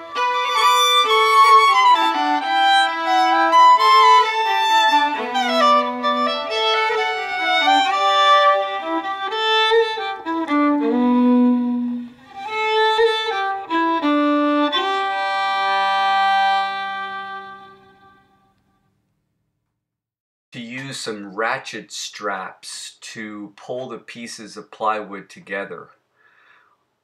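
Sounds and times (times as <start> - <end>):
fiddle music: 0.0 - 18.5.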